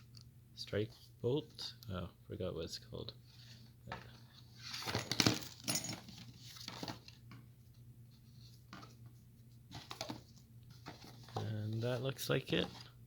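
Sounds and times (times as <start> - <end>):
metal lock parts clinking: 5.0 - 6.1.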